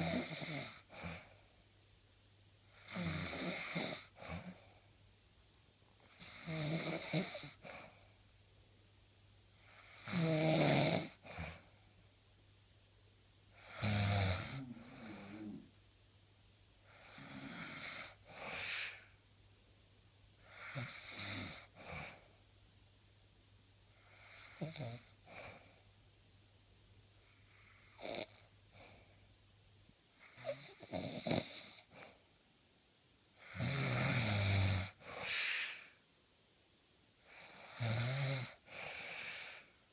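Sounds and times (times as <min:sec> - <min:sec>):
person snoring: 0:00.0 - 0:01.2, 0:02.7 - 0:04.6, 0:06.0 - 0:07.7, 0:09.7 - 0:11.6, 0:13.6 - 0:15.8, 0:16.9 - 0:19.1, 0:20.4 - 0:22.2, 0:24.1 - 0:25.1, 0:30.2 - 0:32.0, 0:33.4 - 0:36.0, 0:37.3 - 0:39.7.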